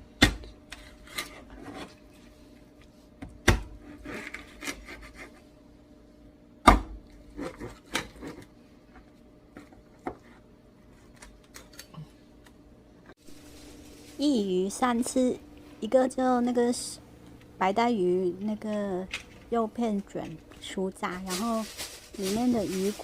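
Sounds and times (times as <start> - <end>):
faint steady hum: 0.0 - 23.0
knife scraping: 0.7 - 2.0, 3.8 - 5.5.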